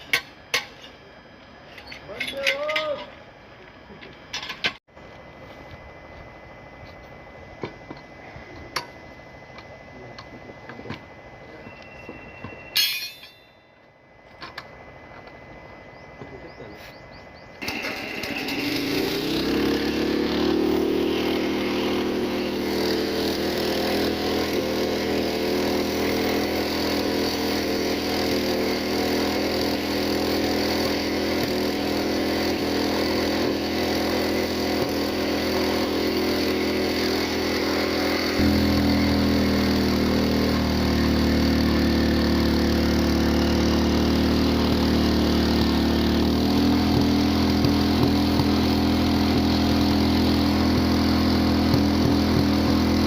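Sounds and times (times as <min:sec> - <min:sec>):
small engine running: 0:17.6 - 0:53.0.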